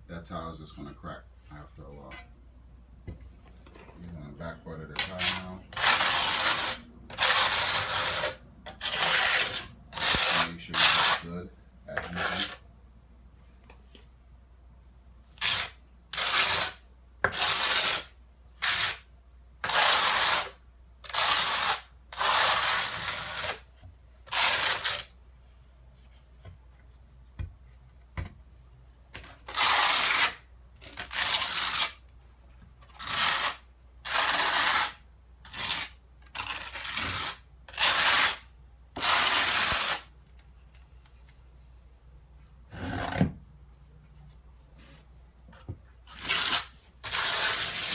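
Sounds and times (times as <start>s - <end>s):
trowel scraping tile mortar: 4.9s - 11.3s, 12.0s - 12.6s, 15.4s - 23.6s, 24.3s - 25.1s, 29.2s - 32.0s, 32.9s - 40.1s, 46.1s - 47.9s.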